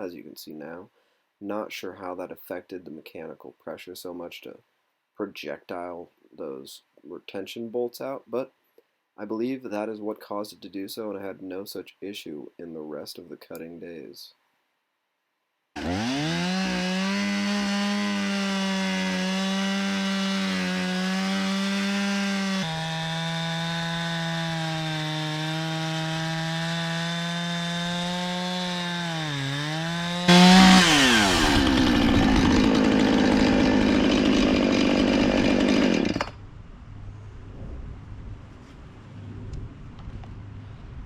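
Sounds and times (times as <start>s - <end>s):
faint low noise: 0.0s - 15.7s
chainsaw ripping along a log: 15.8s - 36.4s.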